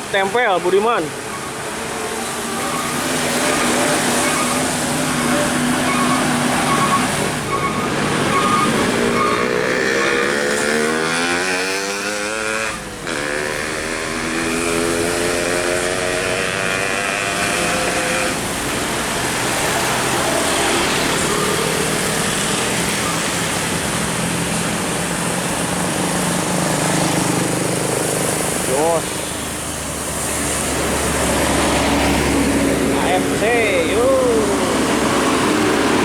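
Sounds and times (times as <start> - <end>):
passing traffic noise: 0.0 - 36.0
vehicle engine revving: 1.2 - 36.0.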